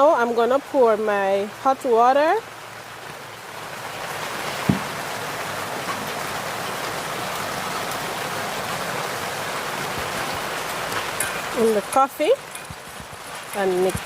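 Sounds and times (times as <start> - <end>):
rain falling: 0.0 - 14.0
short knock: 4.7 - 4.9.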